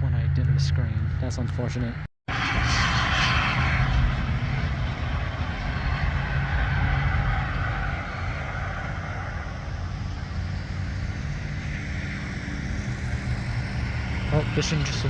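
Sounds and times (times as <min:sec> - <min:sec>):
low rumble of vehicles: 0:00.0 - 0:15.0.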